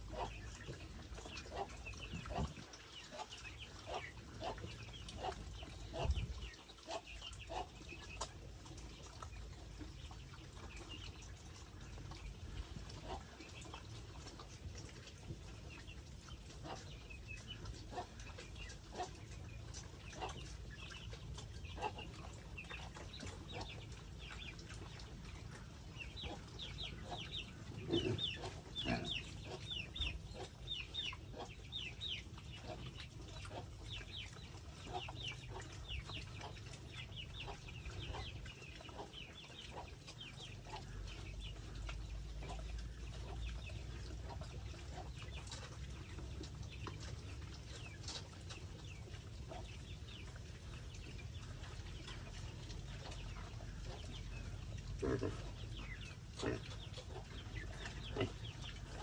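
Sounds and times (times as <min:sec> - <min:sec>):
chickens clucking and peeping: 0:00.0 - 0:59.0.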